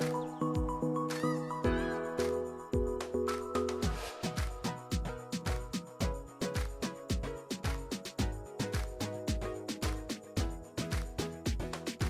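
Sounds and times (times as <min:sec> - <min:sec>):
kick drum and snare beat: 0:03.8 - 0:12.0.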